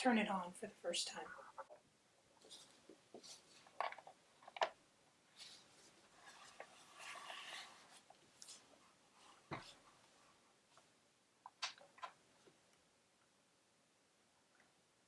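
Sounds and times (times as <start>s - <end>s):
soft scraping and rubbing: 2.4s - 4.6s, 5.3s - 10.9s.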